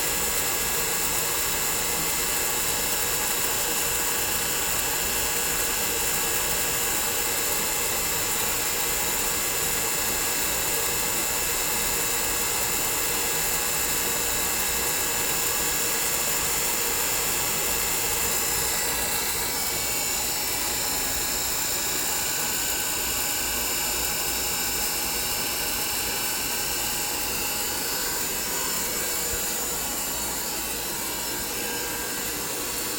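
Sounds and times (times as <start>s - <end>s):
vacuum pumps whining hum: 0.0s - 32.9s
faint rising and falling whines: 25.3s - 32.9s.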